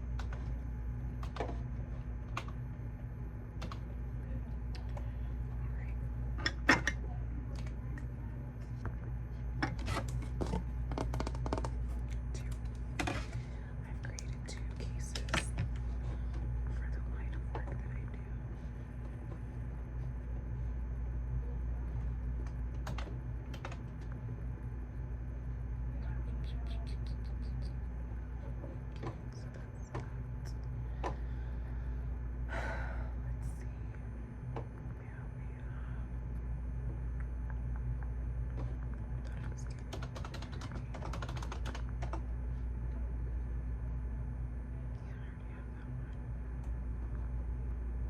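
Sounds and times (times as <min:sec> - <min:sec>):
low hum: 0:00.0 - 0:48.0
computer keyboard typing: 0:22.7 - 0:24.1, 0:39.2 - 0:42.2.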